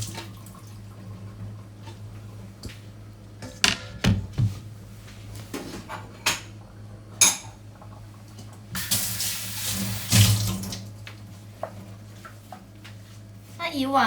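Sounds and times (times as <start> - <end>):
tap running into sink: 3.4 - 4.7.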